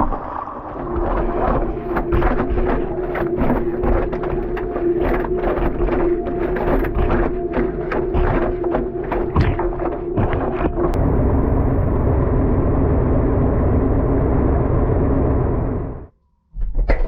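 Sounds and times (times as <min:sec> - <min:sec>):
rushing wash water: 0:00.0 - 0:11.4
washing machine motor hum: 0:00.0 - 0:16.1.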